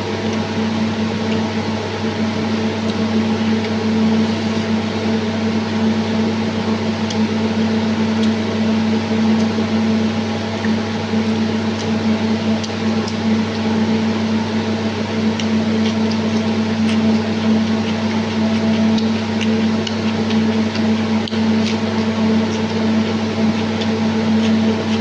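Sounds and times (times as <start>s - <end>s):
steady electrical hum: 0.0s - 25.0s
person chewing food: 10.6s - 13.7s, 15.2s - 25.0s.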